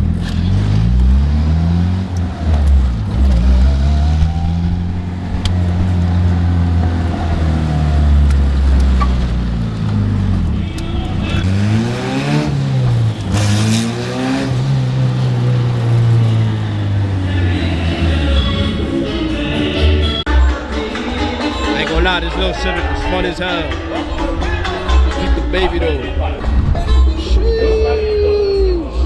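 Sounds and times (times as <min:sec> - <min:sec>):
car engine accelerating and shifting: 0:00.0 - 0:20.3.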